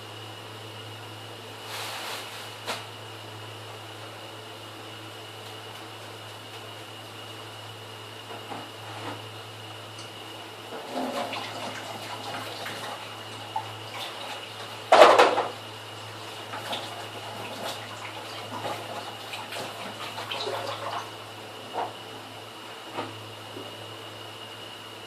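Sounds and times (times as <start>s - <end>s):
tap water running and splashing: 10.7s - 22.0s.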